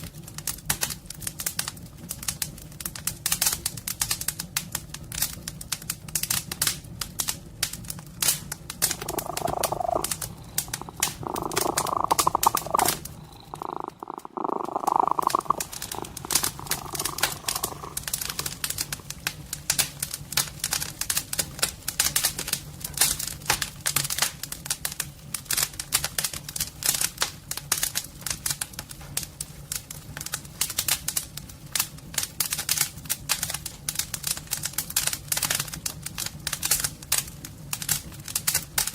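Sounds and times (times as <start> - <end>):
wood fire crackling: 0.0 - 38.9
cat purring: 8.8 - 19.2.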